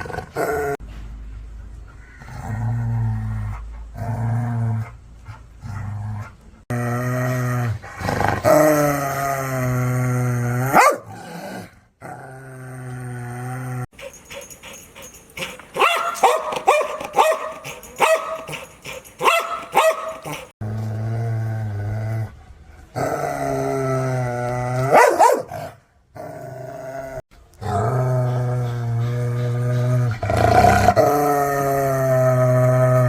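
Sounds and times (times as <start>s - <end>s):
dog growling: 5.6s - 22.3s
dog barking: 10.7s - 11.1s, 14.0s - 20.5s, 24.9s - 25.5s.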